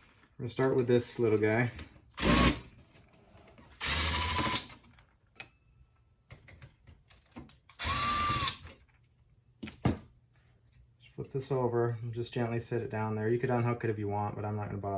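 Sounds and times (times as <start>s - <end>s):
electric screwdriver whirring: 2.2s - 2.6s, 3.8s - 4.7s, 7.8s - 8.6s.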